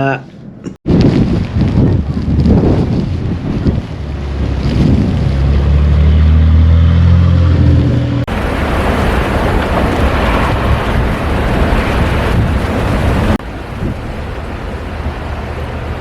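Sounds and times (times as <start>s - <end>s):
strong wind on microphone: 0.4s - 16.0s
low drone rising in pitch: 1.2s - 12.8s.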